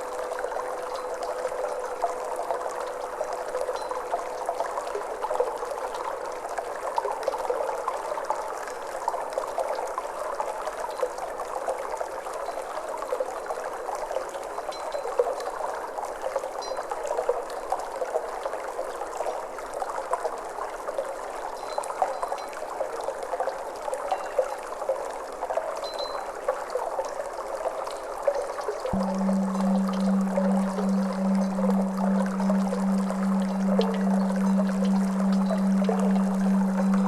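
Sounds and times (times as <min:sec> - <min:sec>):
water trickling and babbling: 0:29.0 - 0:37.0.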